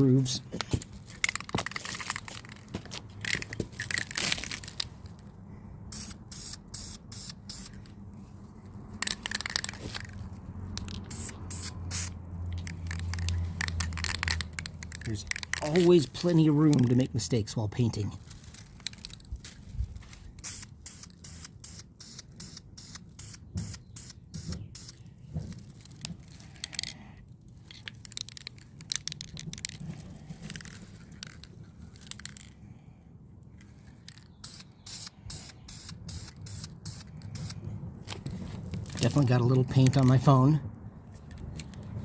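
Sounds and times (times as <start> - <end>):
spray paint can bursts: 5.9 - 7.8, 10.9 - 15.9, 20.4 - 25.0, 34.4 - 37.6.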